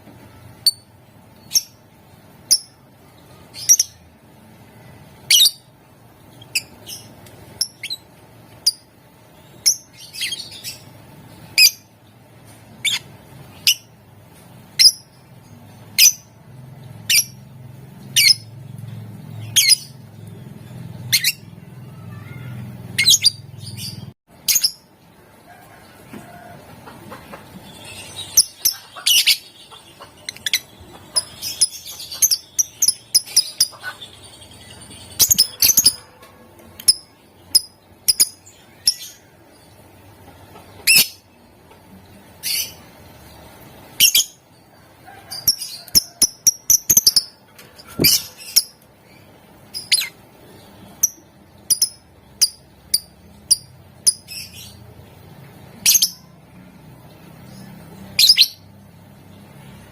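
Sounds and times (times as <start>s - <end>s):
lovebird chirping: 5.0s - 11.9s, 12.8s - 14.0s, 14.7s - 16.4s, 17.0s - 18.6s, 19.2s - 24.9s, 27.5s - 36.1s, 36.8s - 39.3s, 45.4s - 54.8s, 55.8s - 56.4s, 57.3s - 58.8s.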